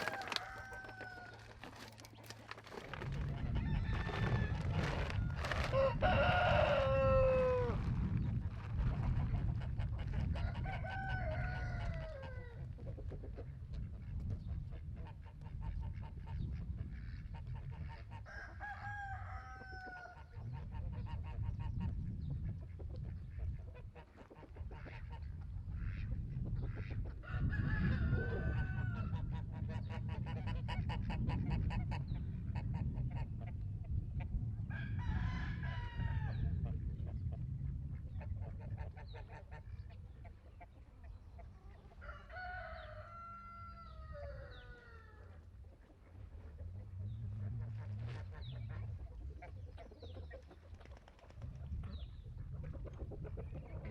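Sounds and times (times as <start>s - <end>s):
rooster crowing: 0.0s - 1.5s, 3.6s - 7.8s, 10.4s - 12.6s, 18.3s - 20.2s, 42.0s - 45.3s
low rumble: 46.3s - 49.4s.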